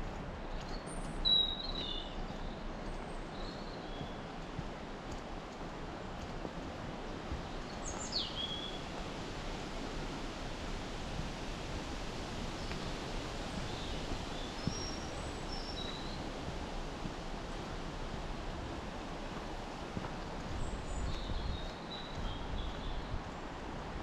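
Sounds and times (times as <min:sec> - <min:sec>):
small birds chirping: 0:00.5 - 0:04.3, 0:07.5 - 0:08.8, 0:13.7 - 0:16.2.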